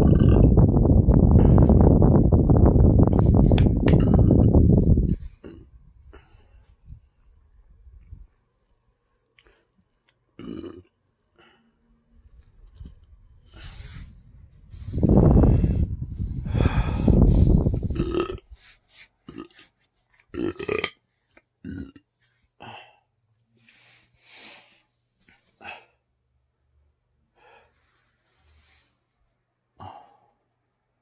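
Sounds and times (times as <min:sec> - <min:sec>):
person belching: 0:00.0 - 0:00.6, 0:03.8 - 0:04.6, 0:10.4 - 0:10.9, 0:17.6 - 0:18.5, 0:20.4 - 0:21.0, 0:21.6 - 0:22.0
person breathing: 0:01.3 - 0:02.0, 0:04.4 - 0:07.4, 0:11.3 - 0:12.2, 0:12.9 - 0:19.7, 0:22.6 - 0:26.0, 0:27.3 - 0:29.0, 0:29.8 - 0:30.4.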